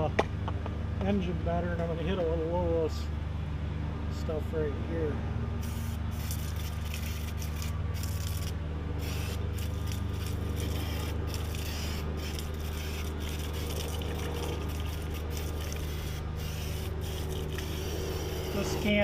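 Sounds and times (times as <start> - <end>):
ventilator fan humming: 0.0 - 19.0
aerosol can spraying: 5.6 - 19.0.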